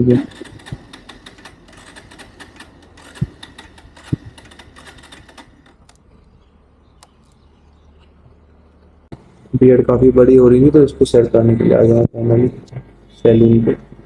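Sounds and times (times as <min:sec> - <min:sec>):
motorcycle starter clicking: 0:00.0 - 0:06.1, 0:06.9 - 0:07.5.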